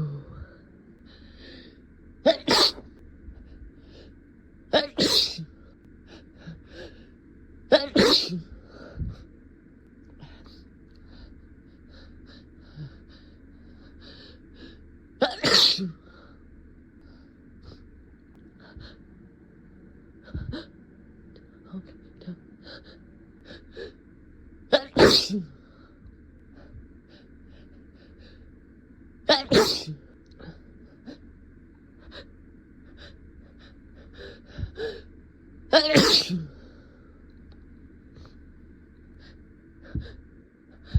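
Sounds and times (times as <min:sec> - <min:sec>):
person sneezing: 0:02.3 - 0:02.9, 0:04.8 - 0:05.5, 0:07.8 - 0:08.5, 0:15.2 - 0:16.0, 0:24.8 - 0:25.5, 0:29.3 - 0:30.0, 0:35.8 - 0:36.5.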